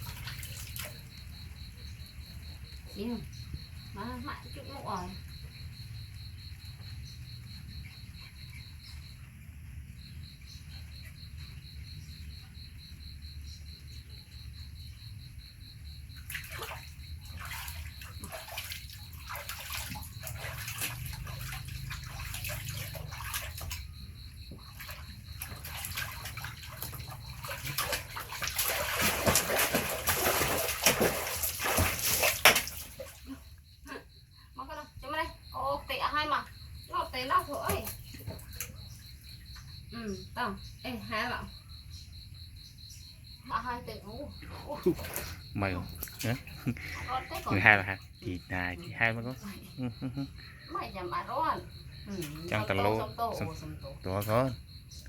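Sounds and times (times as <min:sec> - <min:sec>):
bath water splashing: 0:00.0 - 0:01.3, 0:16.2 - 0:33.4, 0:44.8 - 0:48.3.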